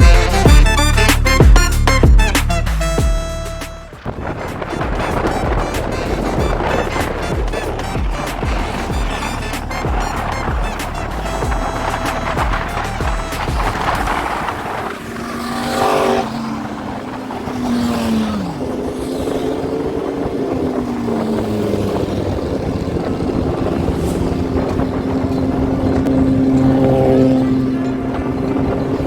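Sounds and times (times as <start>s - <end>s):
road and wind noise: 0.0s - 29.0s
scooter engine running: 0.0s - 29.0s.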